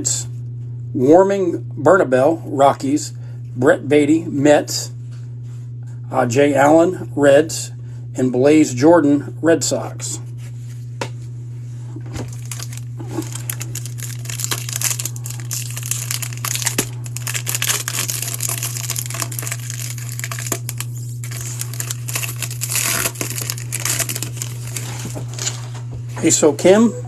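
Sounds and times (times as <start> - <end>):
foil wrapper crinkling: 12.1 - 25.8.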